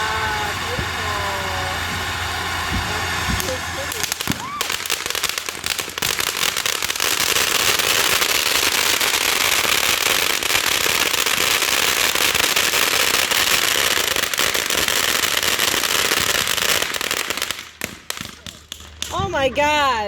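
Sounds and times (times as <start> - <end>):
firework crackling: 0.0 - 20.0.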